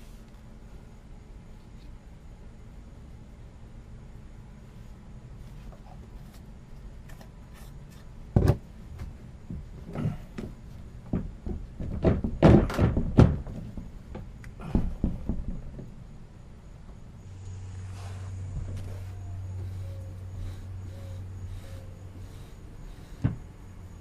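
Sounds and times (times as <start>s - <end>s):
knocks and thuds: 8.3s - 16.0s, 23.2s - 23.5s.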